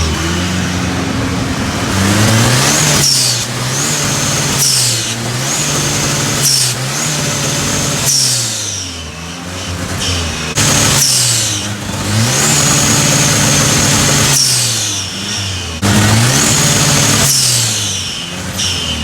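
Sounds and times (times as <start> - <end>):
car engine revving: 0.0 - 19.0.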